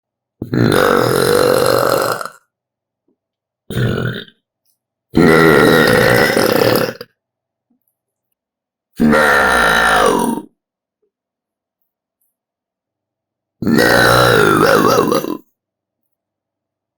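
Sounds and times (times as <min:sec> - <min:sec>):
loud drawn-out burps: 0:00.4 - 0:02.5, 0:03.7 - 0:04.4, 0:05.2 - 0:07.2, 0:09.0 - 0:10.5, 0:13.6 - 0:15.5.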